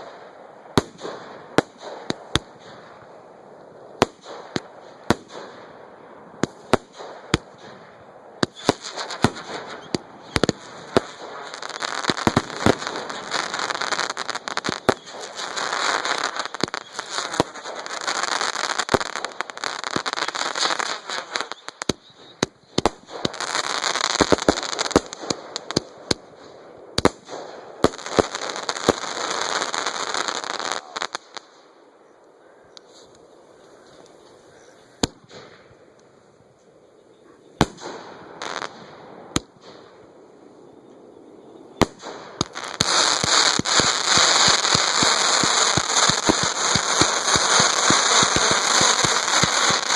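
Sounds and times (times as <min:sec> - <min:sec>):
fireworks banging: 0:00.0 - 0:03.2, 0:06.4 - 0:31.5, 0:41.8 - 0:49.9
fireworks crackling: 0:00.0 - 0:31.9, 0:37.6 - 0:40.3, 0:41.8 - 0:49.9.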